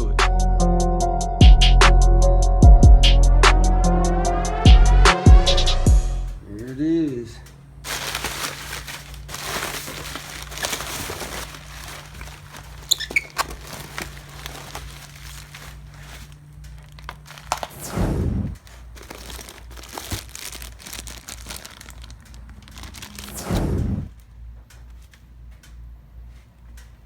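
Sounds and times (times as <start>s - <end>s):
packaging crinkling and rustling: 7.8s - 17.9s, 18.6s - 24.3s.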